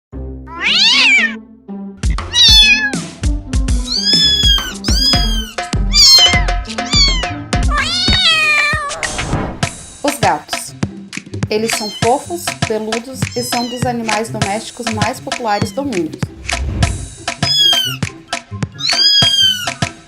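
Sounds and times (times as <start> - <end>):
cat meowing: 0.5 - 1.4, 2.3 - 3.0, 3.8 - 9.1, 11.7 - 12.2, 13.2 - 13.9, 15.6 - 16.2, 17.4 - 18.1, 18.8 - 19.8
background music with beat: 2.0 - 20.0.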